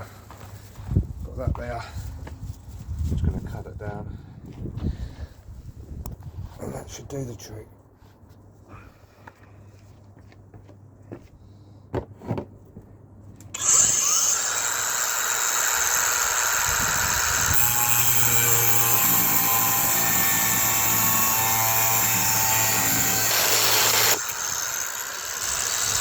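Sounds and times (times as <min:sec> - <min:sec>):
power tool cutting metal bolt: 0:13.6 - 0:26.0.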